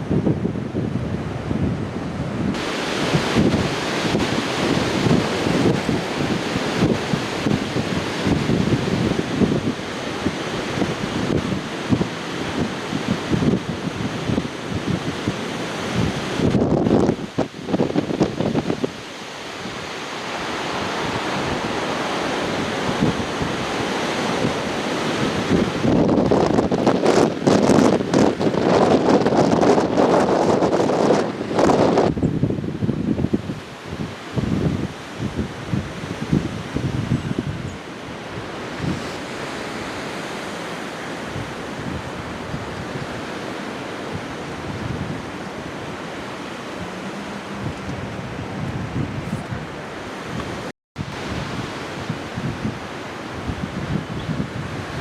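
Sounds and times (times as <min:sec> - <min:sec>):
gusts buffeting microphone: 0:00.0 - 0:55.0
strong wind rushing: 0:00.0 - 0:55.0.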